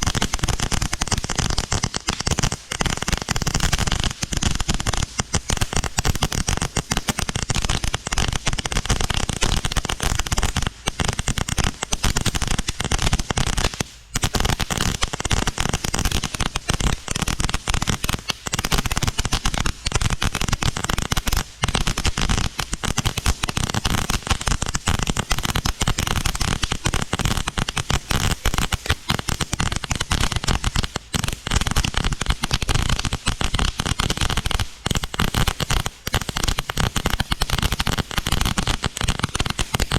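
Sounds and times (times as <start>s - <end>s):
fireworks crackling: 0.0s - 39.9s.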